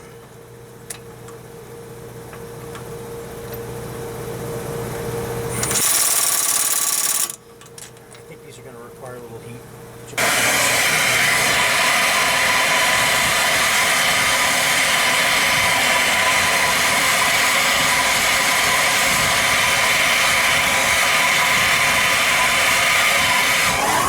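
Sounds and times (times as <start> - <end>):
gas torch hissing: 10.2 - 24.0.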